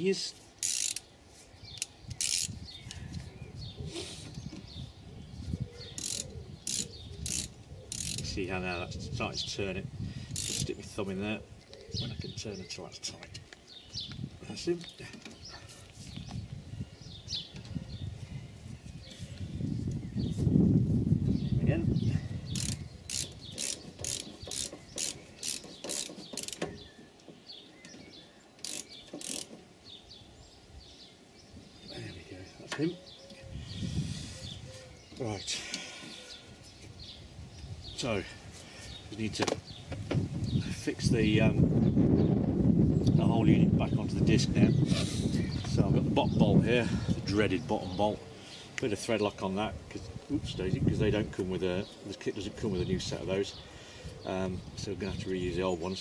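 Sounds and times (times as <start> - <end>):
ratchet wrench clicking: 0.6 - 1.1, 1.8 - 2.6, 6.0 - 8.3, 10.3 - 10.7, 22.5 - 26.6, 28.6 - 29.5.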